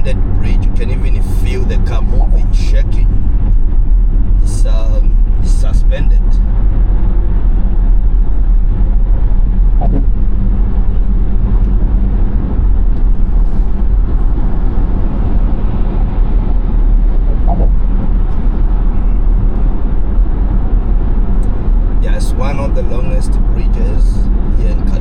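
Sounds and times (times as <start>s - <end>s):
car driving road rumble: 0.0s - 25.0s.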